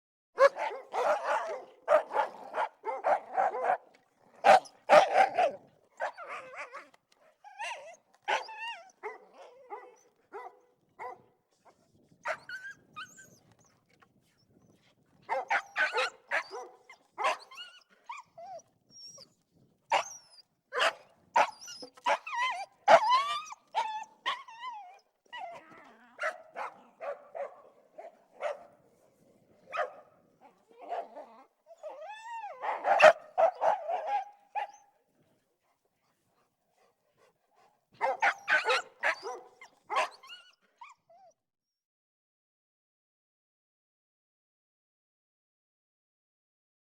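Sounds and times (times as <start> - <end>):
dogs barking: 0.4 - 6.9, 8.3 - 11.2, 15.3 - 17.6, 20.8 - 24.4, 26.2 - 28.8, 29.6 - 30.2, 32.5 - 34.8, 38.0 - 40.3
dog yips and whines: 4.4 - 10.1, 12.2 - 13.8, 15.3 - 27.5, 29.7 - 34.9, 38.0 - 41.4.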